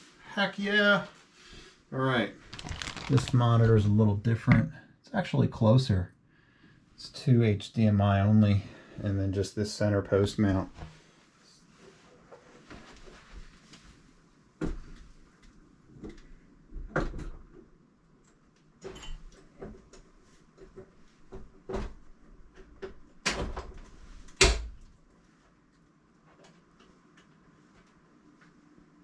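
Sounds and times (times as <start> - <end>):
rustling and scraping: 2.3 - 3.7, 10.7 - 14.2.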